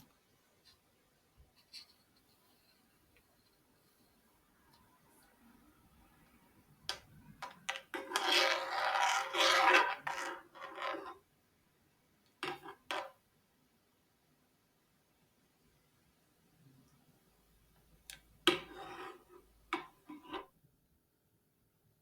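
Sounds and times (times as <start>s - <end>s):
spoon scraping cookware: 18.5s - 20.5s.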